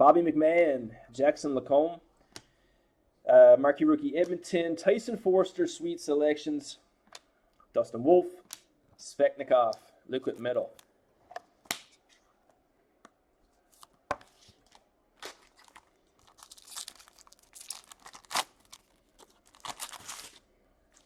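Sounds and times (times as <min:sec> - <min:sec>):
foil wrapper tearing and crinkling: 0:15.2 - 0:21.0.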